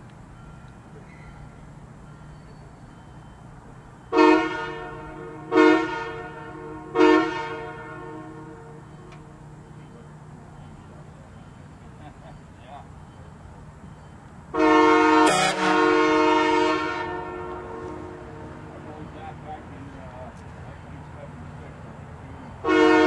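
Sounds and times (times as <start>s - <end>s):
train air horn blasts: 4.1s - 9.4s, 14.5s - 19.1s, 22.5s - 23.0s.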